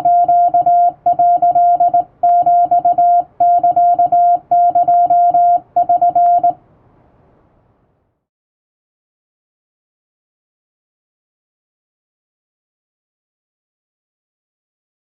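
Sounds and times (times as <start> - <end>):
morse code beeps: 0.0 - 6.6.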